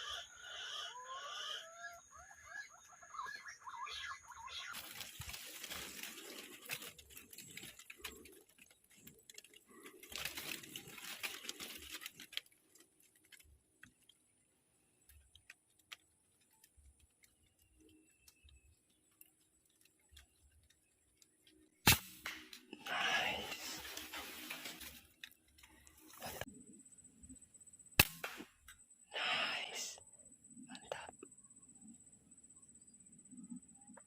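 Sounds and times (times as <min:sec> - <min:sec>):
faint clicks: 0:04.8 - 0:22.9.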